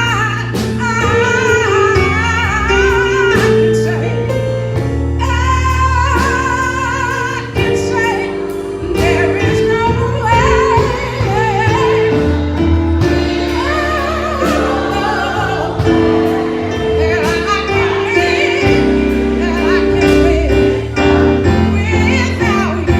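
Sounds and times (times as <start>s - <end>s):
gospel choir singing: 8.2s - 22.9s.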